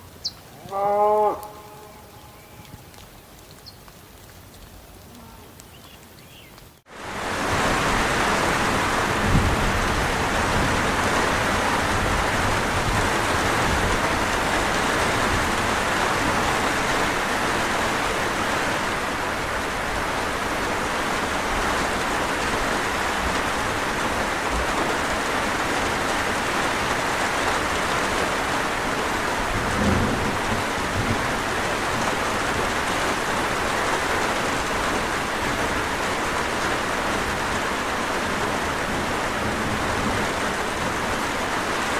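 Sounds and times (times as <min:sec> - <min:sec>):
heavy rain falling: 0:00.0 - 0:41.9
low thunder rumbles: 0:07.7 - 0:17.1, 0:29.3 - 0:33.7, 0:38.3 - 0:41.3.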